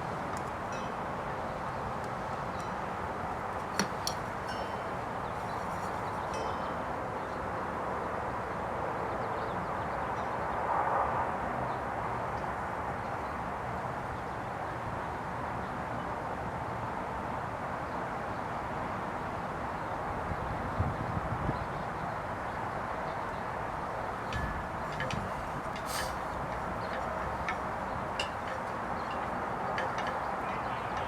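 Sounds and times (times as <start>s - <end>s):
outdoor work area background: 0.0s - 7.5s, 23.9s - 31.0s.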